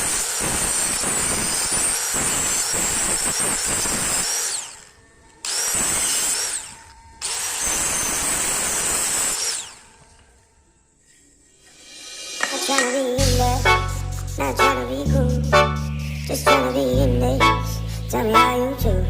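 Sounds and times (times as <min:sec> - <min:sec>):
power tool whining on wood: 0:00.0 - 0:10.8.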